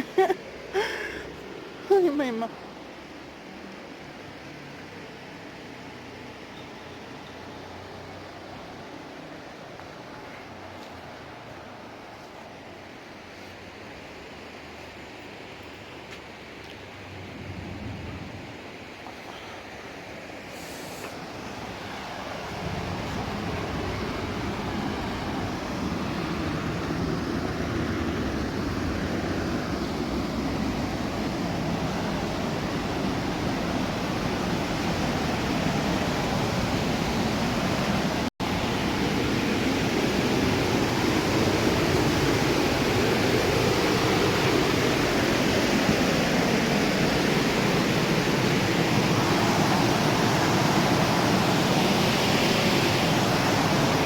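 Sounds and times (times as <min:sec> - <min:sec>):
mountain river rushing: 0:00.0 - 0:54.0
wind buffeting microphone: 0:21.3 - 0:54.0.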